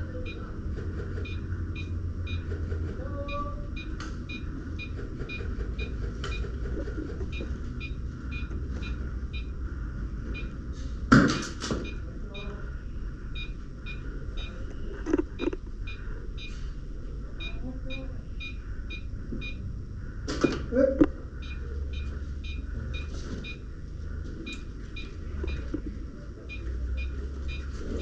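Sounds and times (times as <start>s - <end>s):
low steady hum: 0.0s - 28.0s
short electronic beeps: 1.2s - 2.5s, 3.2s - 6.5s, 7.3s - 9.6s, 10.3s - 10.6s, 13.4s - 14.9s, 15.8s - 16.6s, 17.4s - 19.6s, 21.4s - 23.7s, 24.5s - 25.7s.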